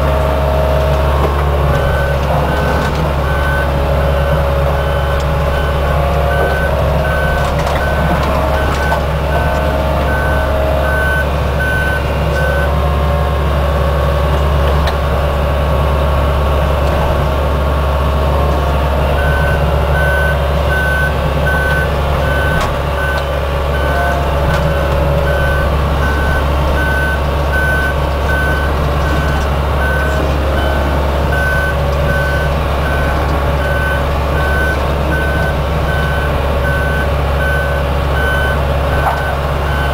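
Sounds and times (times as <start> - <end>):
excavator diesel engine: 0.0 - 39.9
backup alarm beeping: 1.7 - 12.8, 19.1 - 39.9.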